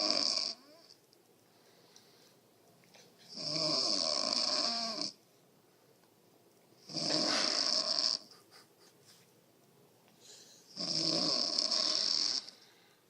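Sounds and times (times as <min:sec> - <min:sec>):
person snoring: 0:00.0 - 0:00.8, 0:03.3 - 0:05.2, 0:06.9 - 0:08.3, 0:10.7 - 0:12.6.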